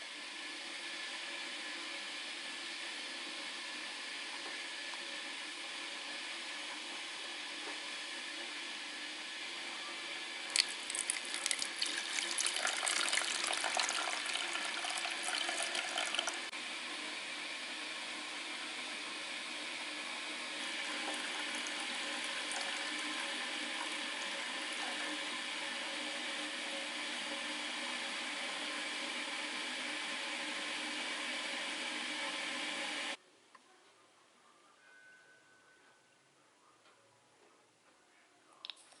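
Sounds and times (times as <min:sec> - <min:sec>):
water pouring and splashing: 0:10.5 - 0:16.5.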